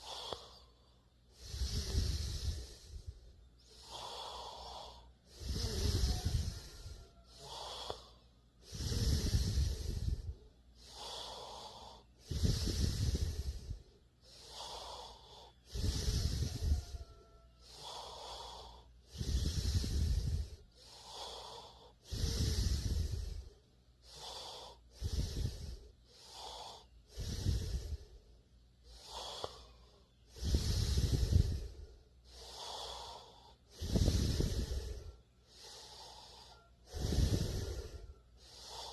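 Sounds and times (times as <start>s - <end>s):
breathy hiss: 0.0s - 38.9s
person snoring: 0.0s - 38.9s.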